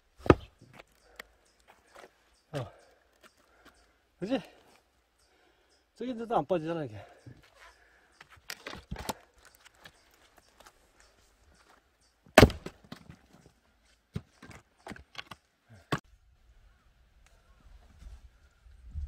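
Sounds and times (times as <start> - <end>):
axe striking a log: 0.2 - 0.6, 12.3 - 13.2.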